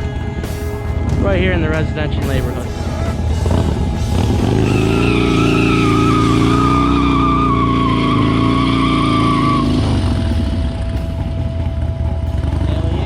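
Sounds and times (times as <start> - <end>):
motorcycle engine running hard: 0.0 - 13.0
tyre squealing on pavement: 2.6 - 10.5.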